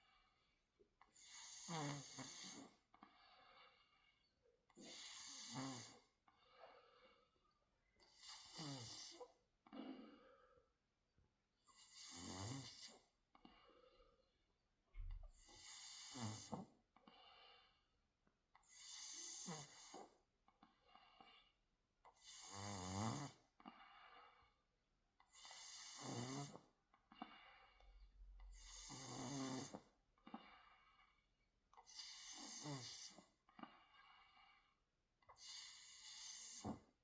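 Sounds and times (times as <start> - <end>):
person snoring: 1.2 - 2.8, 4.8 - 6.1, 8.1 - 10.0, 11.7 - 13.0, 15.4 - 16.7, 18.7 - 20.2, 22.2 - 24.5, 25.4 - 27.8, 28.5 - 31.0, 31.9 - 33.2, 35.4 - 36.9.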